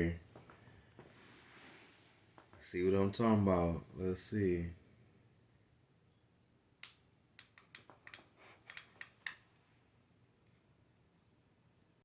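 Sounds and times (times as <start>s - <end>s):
faint plastic clicks: 6.8s - 9.5s.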